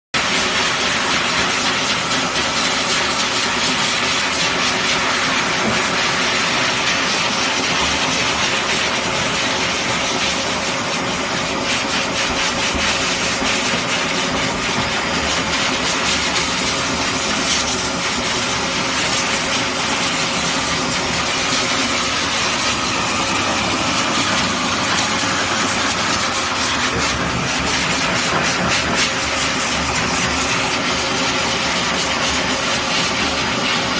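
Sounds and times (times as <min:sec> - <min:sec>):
blower dryer rushing air: 0:00.2 - 0:33.9.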